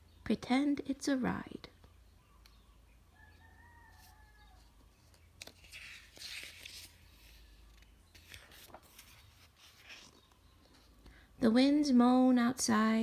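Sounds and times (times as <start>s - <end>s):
soft rustle: 3.8s - 11.0s.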